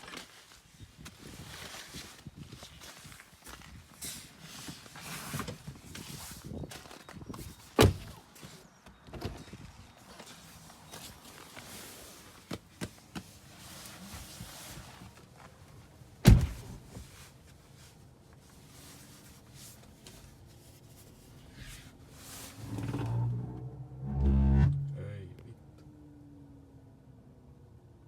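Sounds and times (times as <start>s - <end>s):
sharp thunk: 16.2s - 16.6s
heat pump droning moan: 22.6s - 25.4s.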